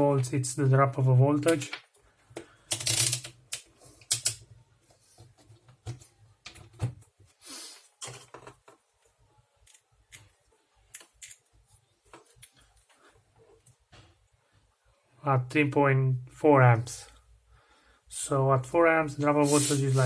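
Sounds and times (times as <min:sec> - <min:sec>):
tools handled on a workbench: 0:08.0 - 0:08.9.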